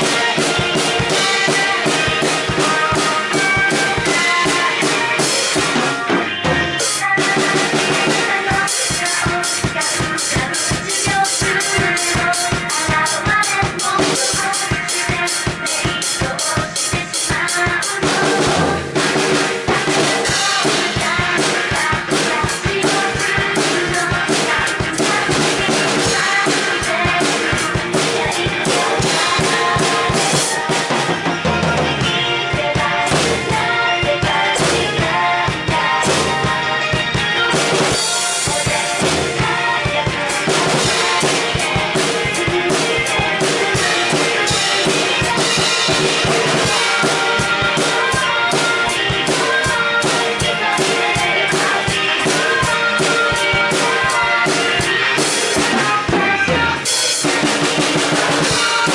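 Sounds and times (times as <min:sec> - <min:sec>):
drum kit beat: 0:00.0 - 0:58.9.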